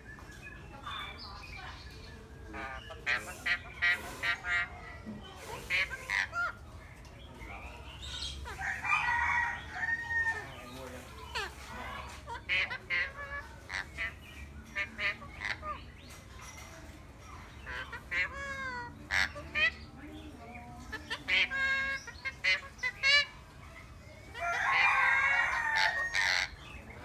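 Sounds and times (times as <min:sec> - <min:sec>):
birds squawking: 0:00.0 - 0:27.0.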